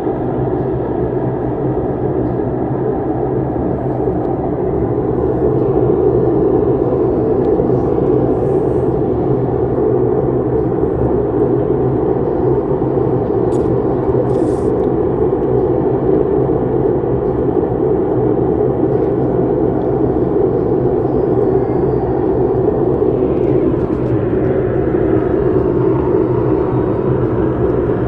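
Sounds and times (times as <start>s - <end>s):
low droning rumble: 0.0s - 28.0s.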